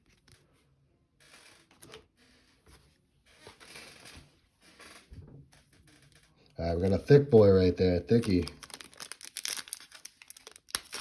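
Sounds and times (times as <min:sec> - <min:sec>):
trading cards rustling: 0:06.7 - 0:11.0.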